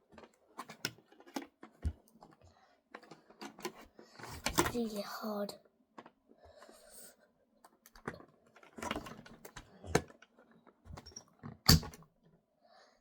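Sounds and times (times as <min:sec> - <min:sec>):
plastic clicks and knocks: 0:00.0 - 0:02.4, 0:03.0 - 0:04.8, 0:07.6 - 0:12.1.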